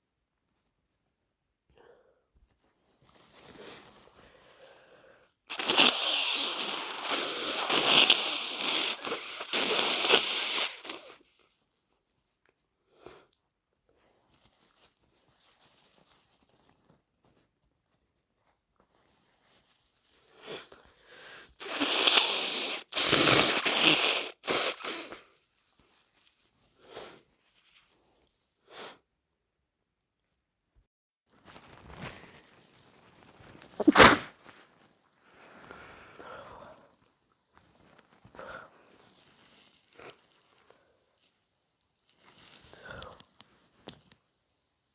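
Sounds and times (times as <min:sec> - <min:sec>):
person blowing congested nose: 0:05.5 - 0:11.2, 0:20.4 - 0:25.3, 0:33.6 - 0:34.5
person sniffing: 0:05.5 - 0:11.2, 0:20.4 - 0:25.3, 0:33.7 - 0:34.4.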